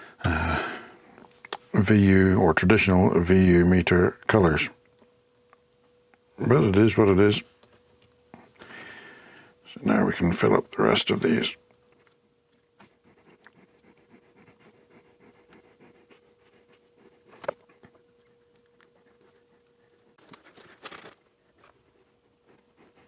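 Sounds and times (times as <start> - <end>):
faint steady hum: 0.0 - 23.0
small clicks and scratches: 4.8 - 6.3, 7.5 - 8.6, 11.6 - 23.0.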